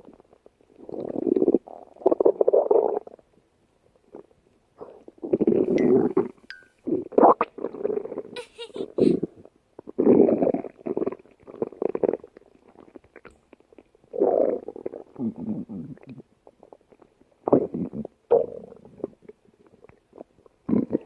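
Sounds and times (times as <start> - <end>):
stomach growling: 0.0 - 3.2, 9.8 - 21.0.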